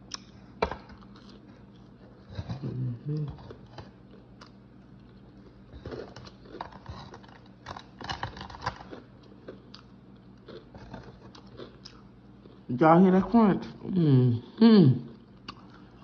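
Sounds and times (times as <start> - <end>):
chewing crisp fried food: 0.0 - 12.7, 15.1 - 16.0.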